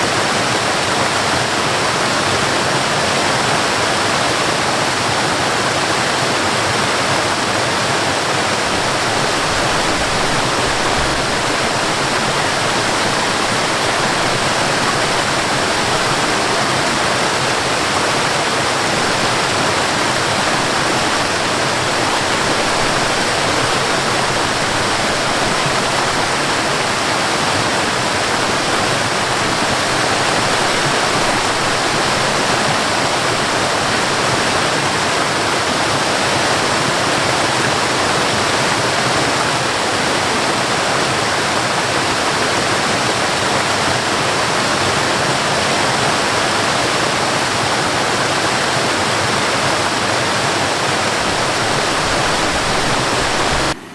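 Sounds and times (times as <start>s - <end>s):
waterfall rushing: 0.0s - 53.9s.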